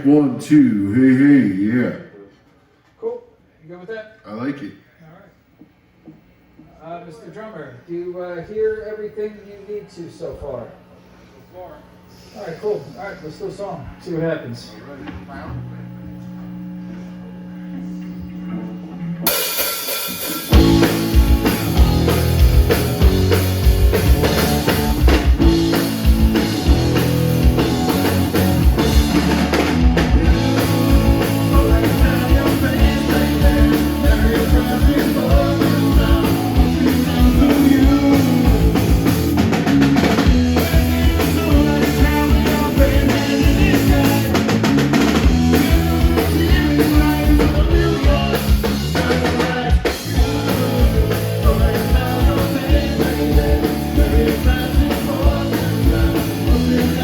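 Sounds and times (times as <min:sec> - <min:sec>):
drums: 0:15.0 - 0:57.0
live rock band playing: 0:19.2 - 0:57.0.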